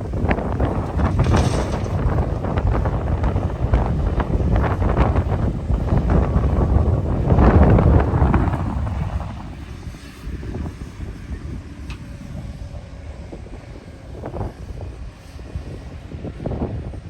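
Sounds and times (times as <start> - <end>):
heavy diesel machinery rumbling: 0.0 - 13.4
wind noise on microphone: 0.0 - 17.0.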